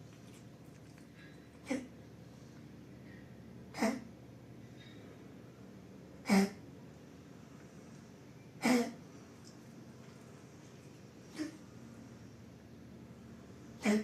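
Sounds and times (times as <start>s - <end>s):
dog coughing: 3.7s - 4.1s, 6.2s - 6.6s, 8.6s - 9.0s, 11.3s - 11.6s, 13.8s - 14.0s.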